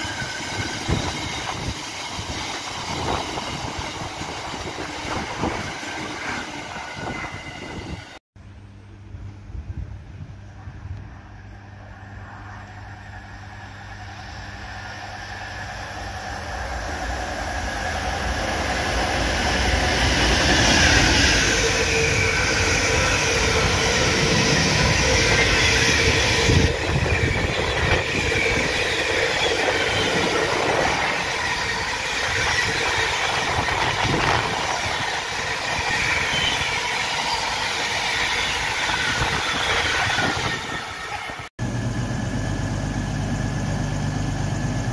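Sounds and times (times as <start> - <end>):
high wheel squeal: 0.0 - 8.2, 13.5 - 41.5
train passing: 0.0 - 8.2, 10.4 - 44.9
wheels rushing on rails: 0.0 - 8.2, 10.5 - 44.9.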